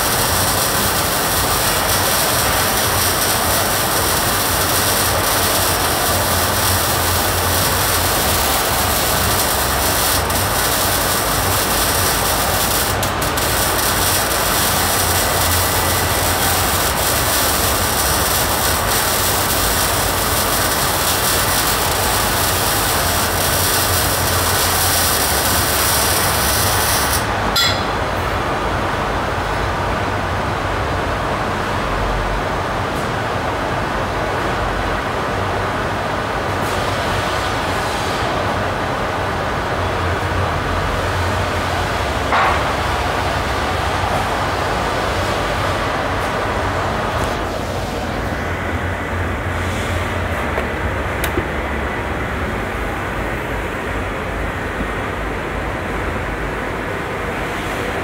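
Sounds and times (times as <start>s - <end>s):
arc welding hiss and crackle: 0.0s - 28.0s, 36.5s - 58.0s
welder switch click: 51.2s - 51.5s.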